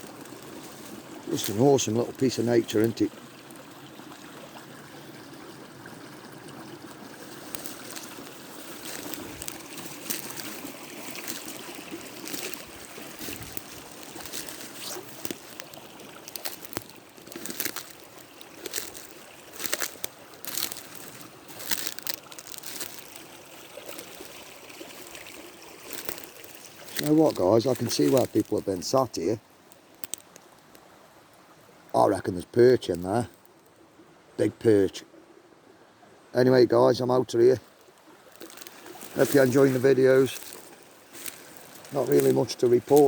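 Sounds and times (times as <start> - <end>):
stream trickling over stones: 0.0 - 43.0
short crackles and rustles: 7.2 - 30.9, 37.6 - 43.0.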